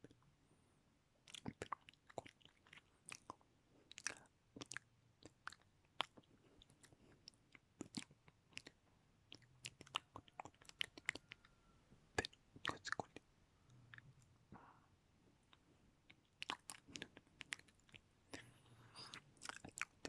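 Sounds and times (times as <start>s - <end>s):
wet lip smacks: 1.3s - 11.4s, 15.5s - 20.0s
tongue clicks: 1.3s - 11.6s, 12.2s - 14.3s, 15.5s - 20.0s.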